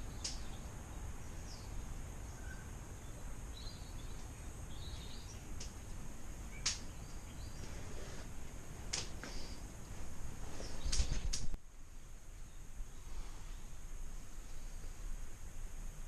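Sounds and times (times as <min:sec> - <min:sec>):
outdoor background noise: 0:00.0 - 0:16.0
sharp high clicks: 0:06.6 - 0:06.9.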